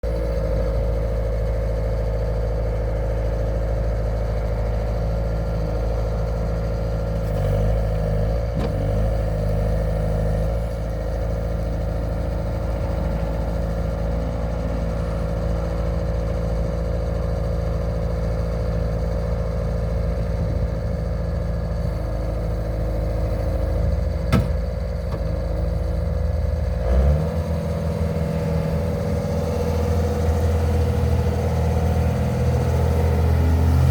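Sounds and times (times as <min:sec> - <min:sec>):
diesel engine whining: 0:00.0 - 0:33.9
sharp knock: 0:24.3 - 0:24.6.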